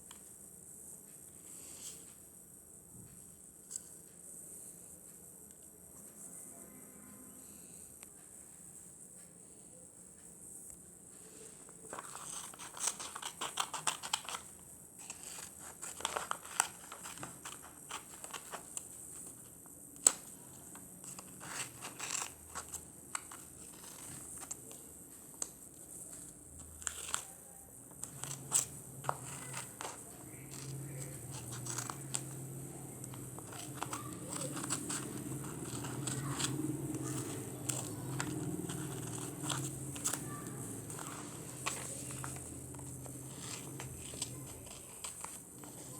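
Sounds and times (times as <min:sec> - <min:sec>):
faint low hum: 0:00.0 - 0:45.9
paper rustling: 0:11.2 - 0:45.9
scissors snipping paper: 0:11.4 - 0:45.9.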